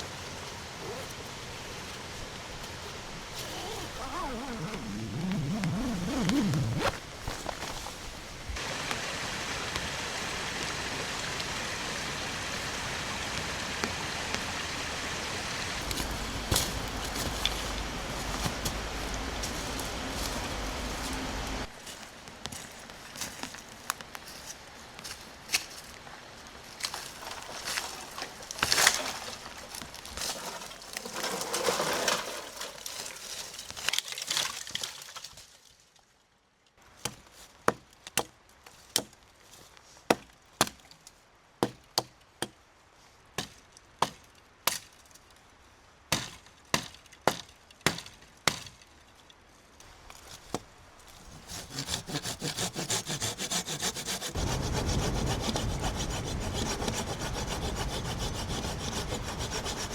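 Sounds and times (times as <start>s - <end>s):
wood pieces rustling and knocking: 26.8s - 35.4s
saw cutting wood: 51.3s - 59.9s.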